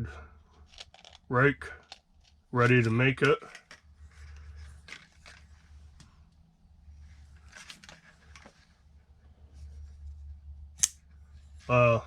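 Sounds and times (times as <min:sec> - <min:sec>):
packaging rustling and scraping: 0:03.5 - 0:05.9.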